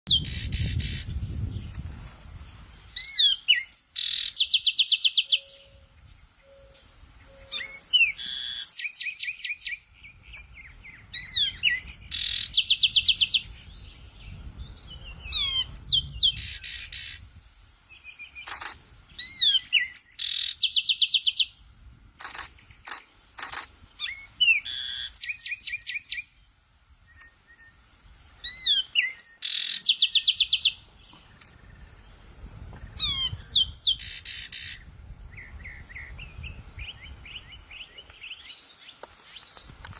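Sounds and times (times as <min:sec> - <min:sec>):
songbird singing: 0:00.0 - 0:21.6, 0:22.2 - 0:39.9
thin high whine: 0:05.4 - 0:08.9.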